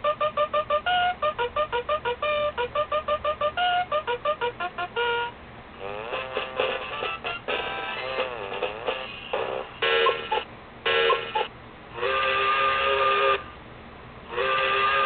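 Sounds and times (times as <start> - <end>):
long steady alarm tones: 0.0 - 8.8, 9.4 - 13.5, 14.3 - 15.0
short alarm tones: 9.8 - 13.5, 14.4 - 15.0.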